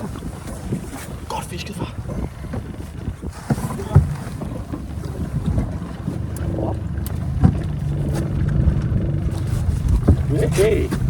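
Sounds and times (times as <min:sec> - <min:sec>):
boat motor humming: 0:00.0 - 0:11.0
wind noise: 0:00.0 - 0:11.0.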